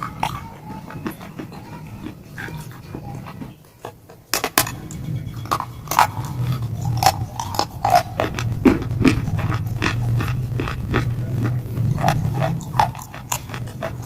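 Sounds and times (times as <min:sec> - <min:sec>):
stone crunching in mouth: 0:05.5 - 0:14.0.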